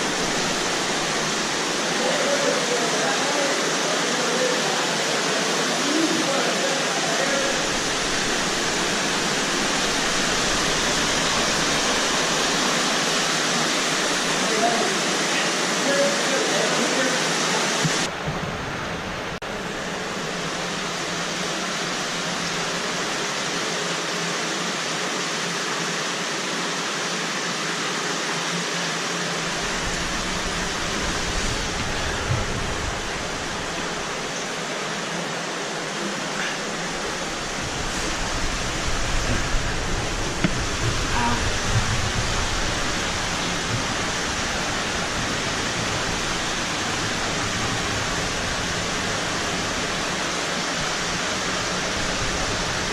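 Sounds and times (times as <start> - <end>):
stream water rushing: 0.0 - 52.9
deep rumble: 29.4 - 34.4, 36.6 - 50.1.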